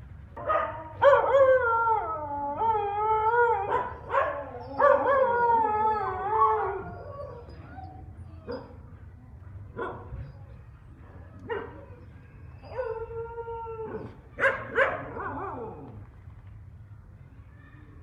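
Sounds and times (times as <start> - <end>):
dog howling: 1.0 - 8.0.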